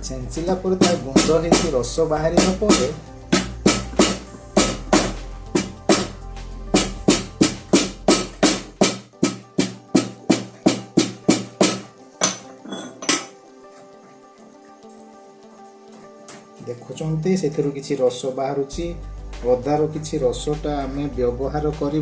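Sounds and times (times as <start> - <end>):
bass: 0.0 - 8.9, 18.7 - 22.0
percussive beat: 0.8 - 11.9.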